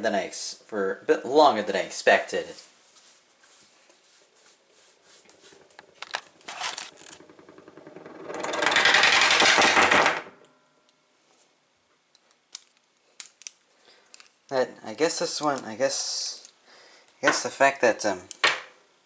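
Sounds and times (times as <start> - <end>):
spinning padlock rattling: 5.7 - 10.2.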